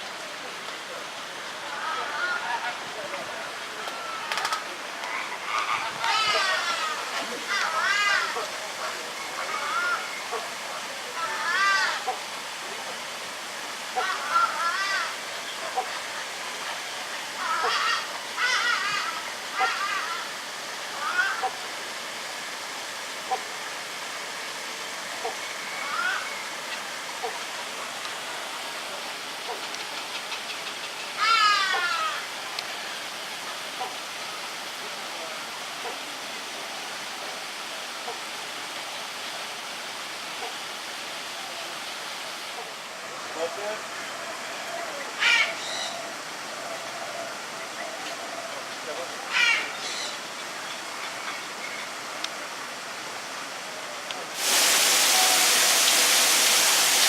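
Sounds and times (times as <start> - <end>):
falling water rushing: 0.0 - 57.0
bird harsh call: 49.3 - 50.2.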